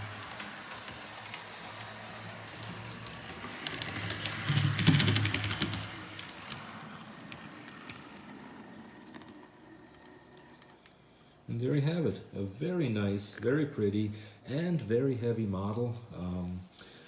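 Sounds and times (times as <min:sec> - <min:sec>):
wheels clicking over rails: 0:00.0 - 0:11.0.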